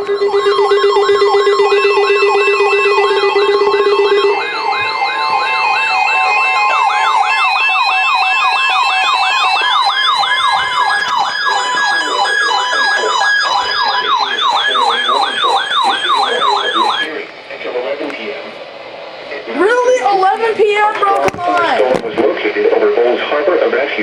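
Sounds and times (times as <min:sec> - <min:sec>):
two-note beep: 0:00.0 - 0:08.0
siren-like yelp tone: 0:00.0 - 0:17.1
steady high tone: 0:00.0 - 0:17.6.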